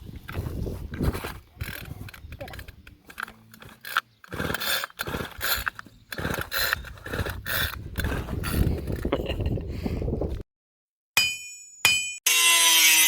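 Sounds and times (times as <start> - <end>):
pull-starter cord rasping: 1.0 - 9.1
small engine turning over: 1.0 - 9.1.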